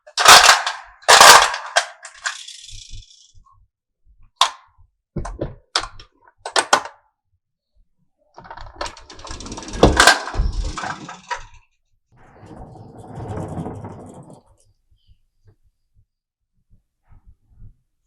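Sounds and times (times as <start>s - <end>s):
marbles clattering on wooden run: 9.0s - 11.6s.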